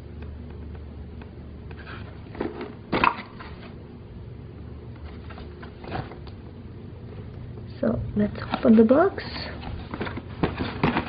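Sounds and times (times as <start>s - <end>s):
low steady hum: 0.0s - 11.0s
cardboard box knocks and scrapes: 9.8s - 11.0s.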